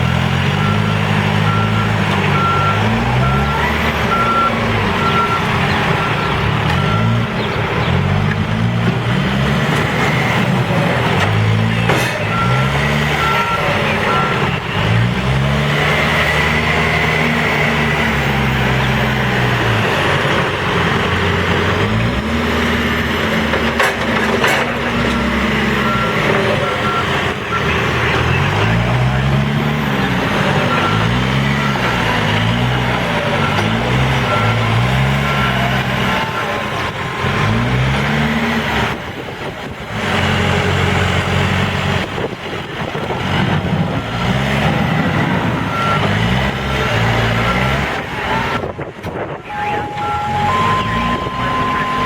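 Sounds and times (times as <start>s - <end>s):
diesel engine revving: 0.0s - 52.0s
reversing alarm beeping: 0.2s - 8.0s, 11.3s - 15.5s, 20.8s - 38.9s, 44.6s - 48.7s, 49.4s - 52.0s.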